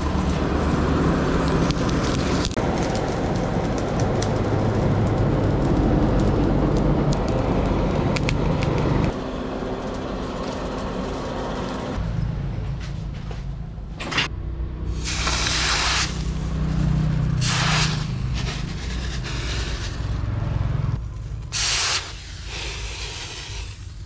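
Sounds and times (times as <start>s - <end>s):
short hiss: 21.5s - 23.8s.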